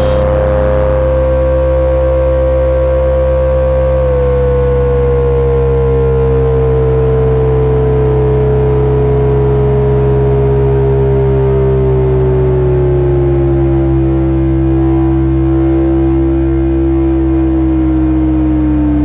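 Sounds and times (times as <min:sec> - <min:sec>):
pure tone sliding lower: 0:00.0 - 0:01.9
low electronic hum: 0:00.0 - 0:02.9.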